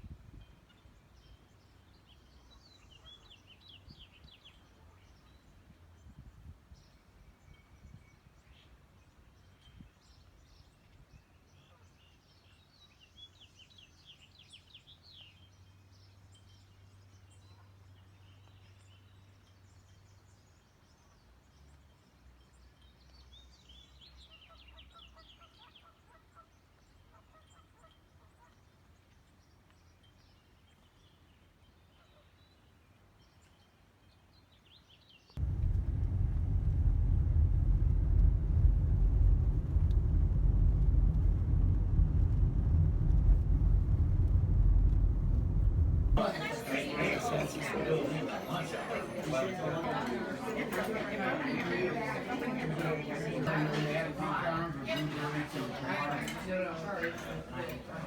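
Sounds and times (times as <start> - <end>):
vehicle rumble: 35.4 - 46.8
low steady hum: 35.4 - 48.1.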